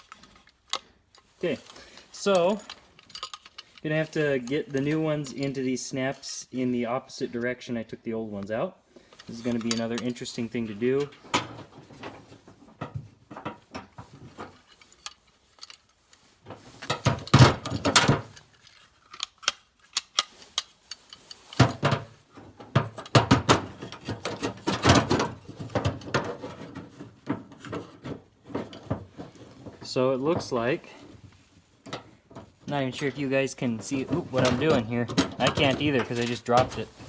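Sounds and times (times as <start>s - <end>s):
latch rod clicking and rattling: 16.9s - 18.5s.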